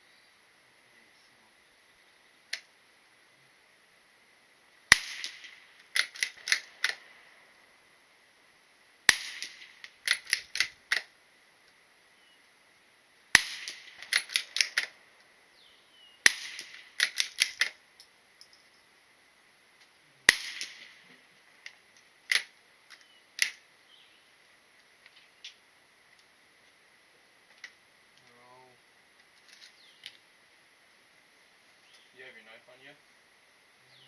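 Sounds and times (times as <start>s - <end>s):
loud single gunshots: 4.9s - 7.1s, 9.1s - 10.7s, 13.3s - 15.0s, 16.2s - 17.8s, 20.3s - 21.2s
quick quieter shots: 4.9s - 7.6s, 9.1s - 11.1s, 13.3s - 15.1s, 16.2s - 17.8s, 20.2s - 21.4s.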